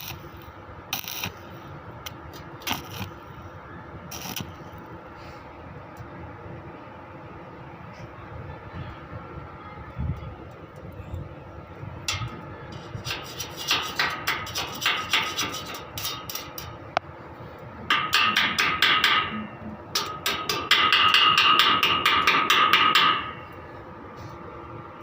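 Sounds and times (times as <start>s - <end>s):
hammer striking steel pipe: 17.9s - 23.4s.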